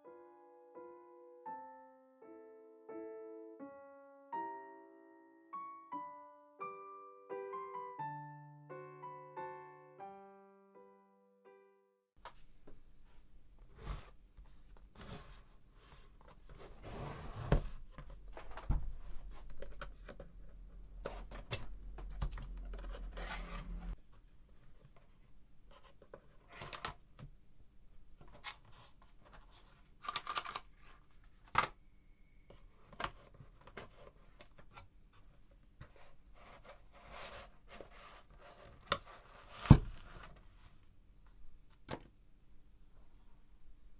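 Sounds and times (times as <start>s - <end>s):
plastic and cardboard rustling: 12.2s - 27.3s, 32.5s - 42.1s.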